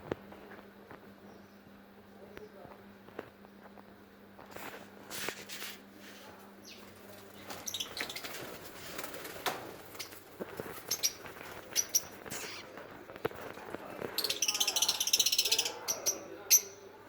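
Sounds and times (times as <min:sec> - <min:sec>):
wings fluttering and rustling: 0:04.4 - 0:15.8
lovebirds chirping: 0:06.6 - 0:08.5, 0:09.9 - 0:12.7, 0:14.0 - 0:16.9.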